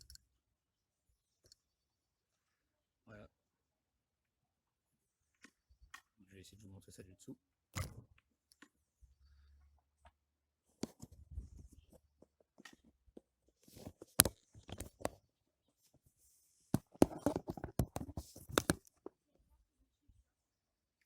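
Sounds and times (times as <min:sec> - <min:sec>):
clicks and scrapes of handling: 0:10.8 - 0:15.2, 0:16.8 - 0:19.2.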